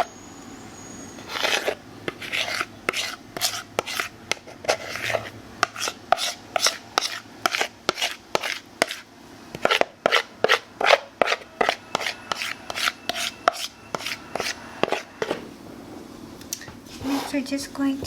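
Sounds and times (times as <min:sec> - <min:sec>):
spatula scraping a mixing bowl: 0:01.2 - 0:15.5.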